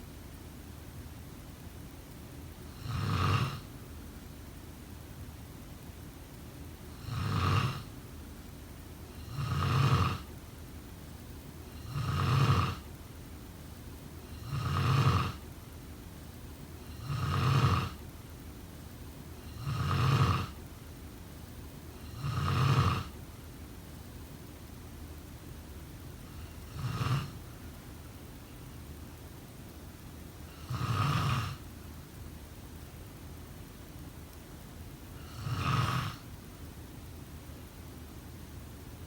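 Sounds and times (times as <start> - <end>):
person snoring: 9.2 - 10.3, 11.8 - 12.8, 14.4 - 15.4, 16.9 - 18.0, 19.5 - 20.6, 22.1 - 23.1, 26.3 - 27.4, 30.5 - 31.6, 35.2 - 36.2.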